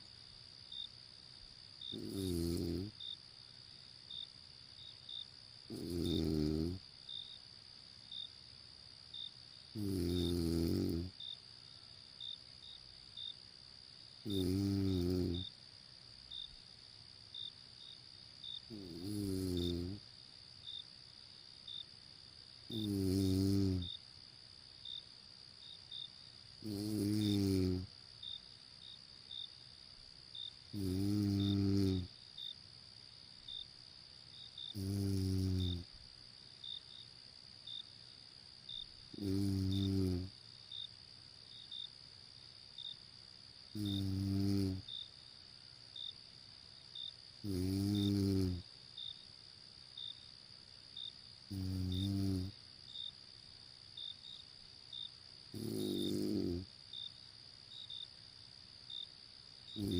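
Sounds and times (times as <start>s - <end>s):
high insect trill: 0.0s - 59.9s
person snoring: 2.0s - 3.0s, 5.7s - 6.8s, 9.8s - 11.1s, 14.2s - 15.4s, 18.7s - 20.0s, 22.7s - 23.9s, 26.6s - 27.9s, 30.8s - 32.1s, 34.7s - 35.8s, 39.2s - 40.3s, 43.8s - 44.9s, 47.4s - 48.6s, 51.5s - 52.5s, 55.5s - 56.7s.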